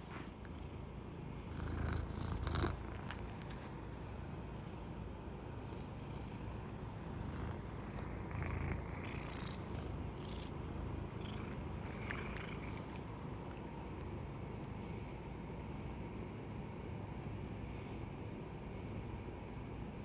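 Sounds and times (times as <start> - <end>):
cat purring: 0.0 - 14.4.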